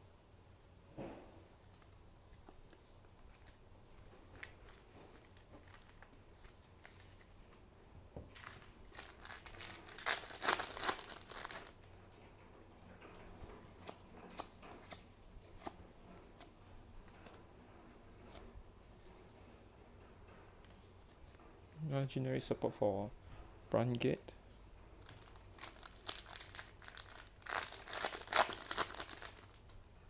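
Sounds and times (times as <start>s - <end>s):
packaging crinkling and tearing: 2.7s - 7.3s, 8.3s - 12.0s, 25.0s - 29.8s.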